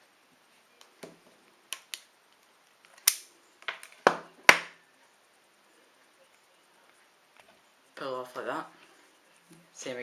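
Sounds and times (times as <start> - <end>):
wire stripper clicks and snaps: 2.8 - 4.6.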